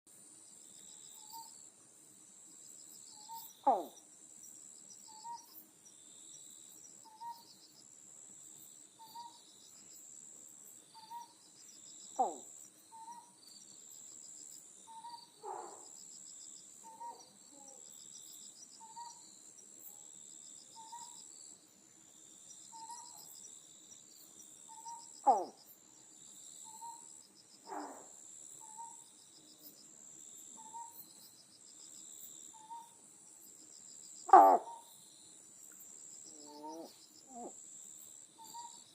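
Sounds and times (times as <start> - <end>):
insects chirring: 0.4 - 38.9
frog calling: 3.2 - 4.0, 12.2 - 13.4, 16.8 - 17.3, 24.7 - 25.6, 34.3 - 34.9, 36.2 - 37.6.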